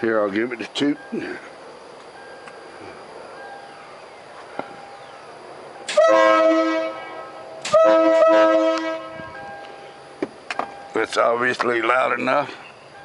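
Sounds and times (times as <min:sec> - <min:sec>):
train horn blasts: 0:05.9 - 0:09.5.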